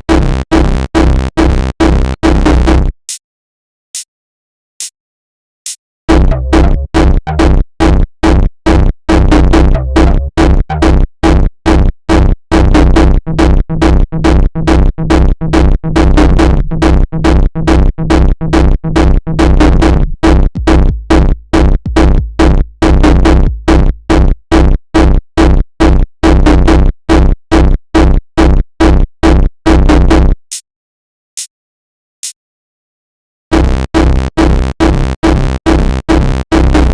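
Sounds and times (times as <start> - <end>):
drum machine kick with deep bass: 17.2 - 24.8, 33.6 - 36.9.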